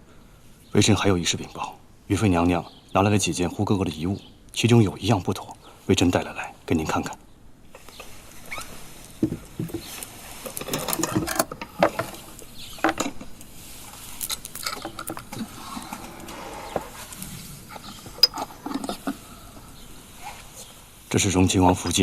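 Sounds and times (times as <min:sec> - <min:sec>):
faint rustling: 0:07.7 - 0:22.0.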